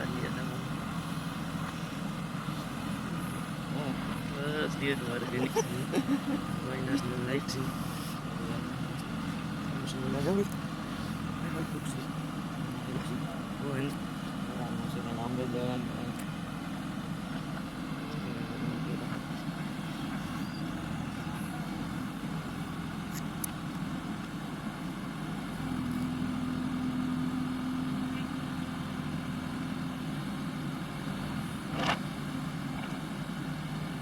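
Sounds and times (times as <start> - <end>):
steady higher hum: 0.0 - 25.7
diesel engine running: 0.0 - 34.0.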